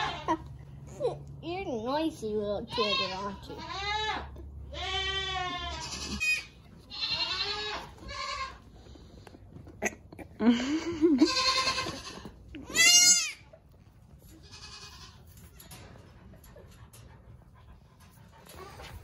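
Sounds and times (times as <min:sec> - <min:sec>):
goat kids bleating: 0:00.0 - 0:00.6, 0:02.7 - 0:08.8, 0:09.6 - 0:13.7, 0:14.3 - 0:15.4.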